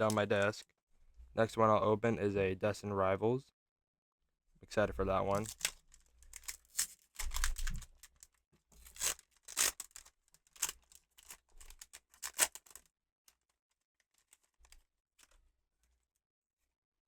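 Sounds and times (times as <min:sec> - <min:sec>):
foil wrapper tearing: 0:05.3 - 0:12.9.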